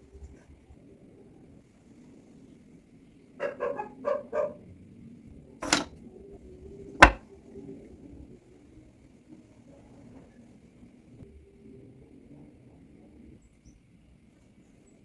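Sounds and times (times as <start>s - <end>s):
dog barking: 3.4s - 4.6s
sharp knock: 5.6s - 5.9s.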